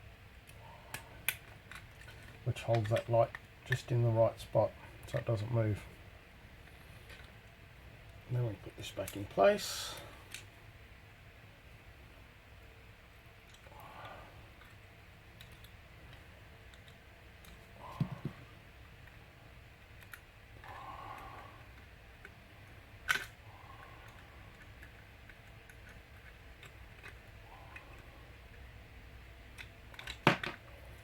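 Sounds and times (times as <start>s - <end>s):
plastic parts clicking and tapping: 0.4s - 3.8s, 15.4s - 18.4s, 23.0s - 23.4s, 24.0s - 28.1s, 29.4s - 31.0s.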